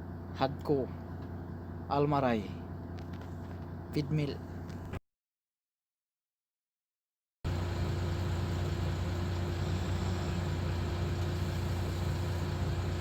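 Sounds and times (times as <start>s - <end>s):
truck engine idling: 7.5s - 13.0s.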